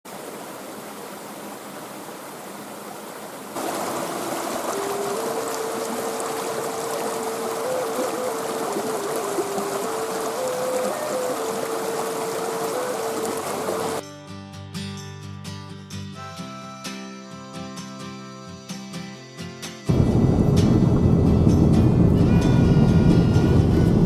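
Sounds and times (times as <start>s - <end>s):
stream water rushing: 0.1s - 14.0s
slow single-line melody: 4.3s - 14.3s, 16.0s - 24.0s.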